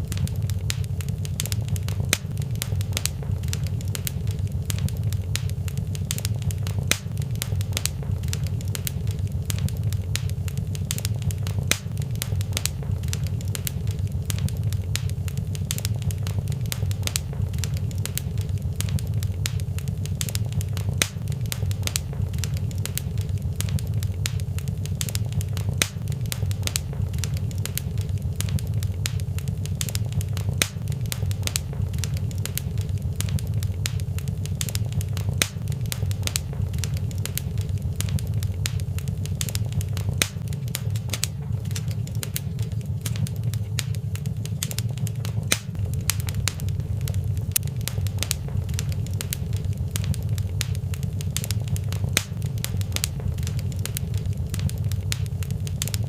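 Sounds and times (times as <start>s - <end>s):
fireplace fire crackling: 0.0s - 56.0s
low rumble: 0.0s - 56.0s.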